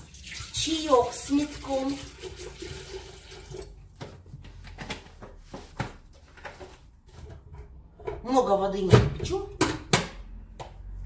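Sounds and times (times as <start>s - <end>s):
tap water running into kettle: 0.0s - 3.8s.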